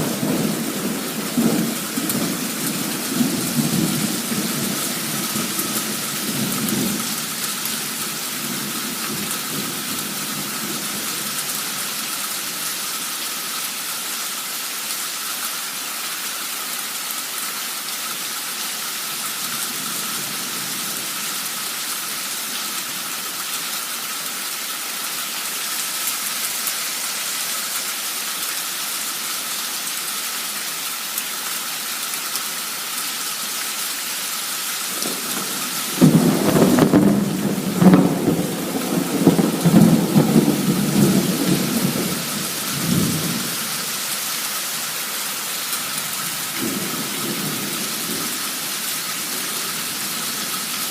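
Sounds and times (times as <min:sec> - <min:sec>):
heavy rain downpour: 0:00.0 - 0:50.9
low rumble of thunder: 0:35.0 - 0:43.6.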